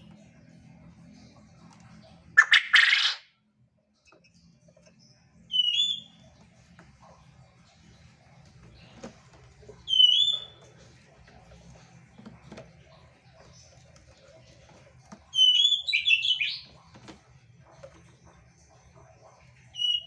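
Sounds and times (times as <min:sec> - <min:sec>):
quail calling: 0:02.4 - 0:03.2, 0:15.3 - 0:16.8.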